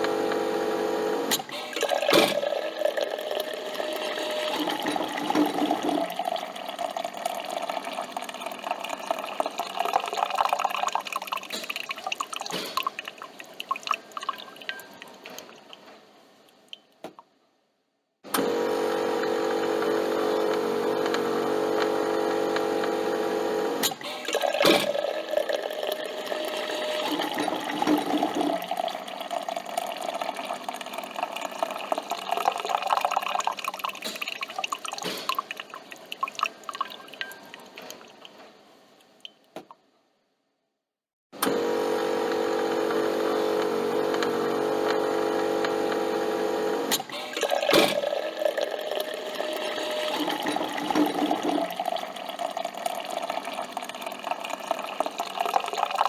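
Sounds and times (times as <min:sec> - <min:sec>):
coffee dripping into cup: 0:01.8 - 0:15.8, 0:24.3 - 0:38.4, 0:47.3 - 0:56.0.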